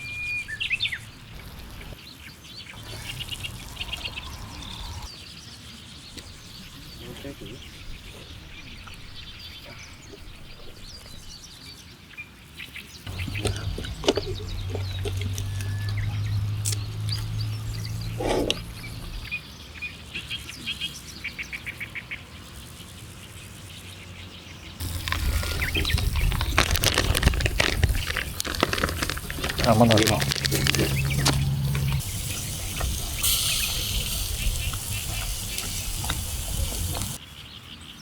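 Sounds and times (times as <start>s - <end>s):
small birds chirping: 0.0s - 38.0s
rustling noise: 24.8s - 33.0s.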